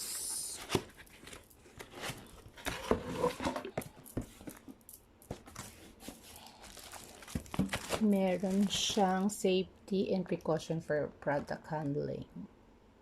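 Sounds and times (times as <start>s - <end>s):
cardboard box being opened: 0.5s - 4.6s.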